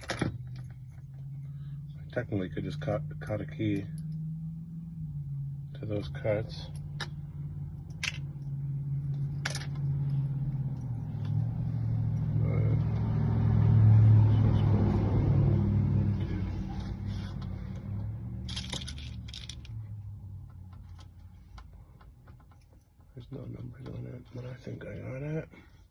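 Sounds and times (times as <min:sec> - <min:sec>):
motor vehicle passing: 0:00.0 - 0:22.1
keys clicking: 0:18.5 - 0:19.8.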